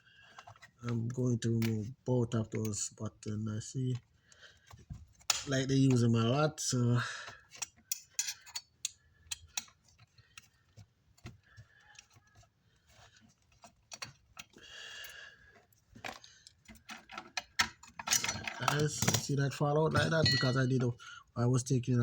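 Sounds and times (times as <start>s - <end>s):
small clicks and taps of hand tools: 7.2s - 19.2s.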